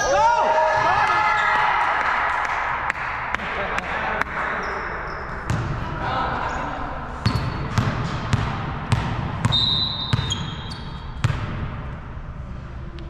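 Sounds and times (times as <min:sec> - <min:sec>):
sneakers squeaking on court: 0:04.4 - 0:11.6
ball bouncing on gym floor: 0:05.3 - 0:06.0, 0:07.2 - 0:11.9.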